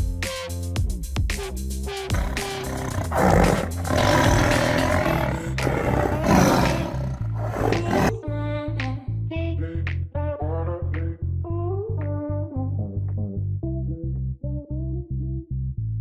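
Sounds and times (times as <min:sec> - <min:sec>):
background music with bass line: 0:00.0 - 0:16.0
tiger roaring: 0:02.1 - 0:08.1.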